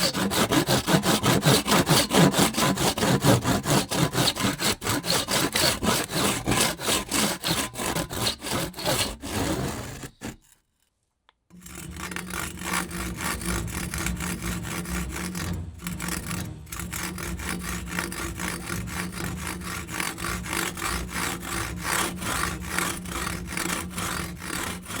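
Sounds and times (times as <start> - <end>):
hand saw cutting wood: 0.0 - 10.7, 11.5 - 25.0
steady low hum: 11.8 - 19.9.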